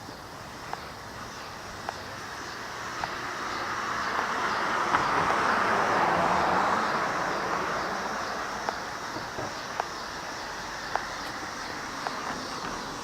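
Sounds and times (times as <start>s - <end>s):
faint sharp ticks: 0.6s - 0.9s, 1.8s - 2.1s, 8.6s - 8.9s, 9.7s - 10.2s, 10.8s - 12.9s
vehicle passing by: 2.2s - 13.0s.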